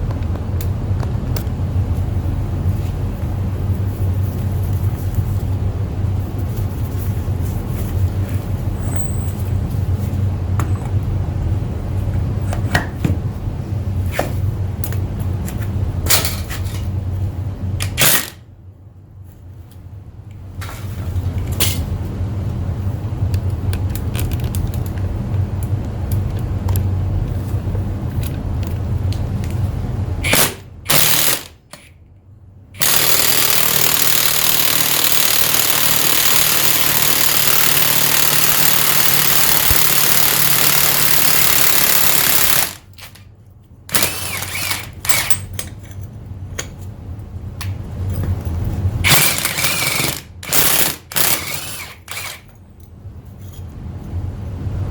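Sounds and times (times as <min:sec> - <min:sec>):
impact wrench hammering: 0:17.9 - 0:18.4, 0:30.2 - 0:31.9, 0:32.8 - 0:43.2, 0:43.9 - 0:45.7, 0:49.0 - 0:52.4.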